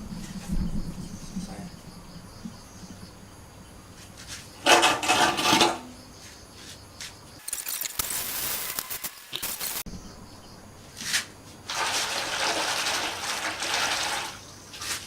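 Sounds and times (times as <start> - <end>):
things scraping and rustling: 4.0 - 9.8, 10.9 - 15.0.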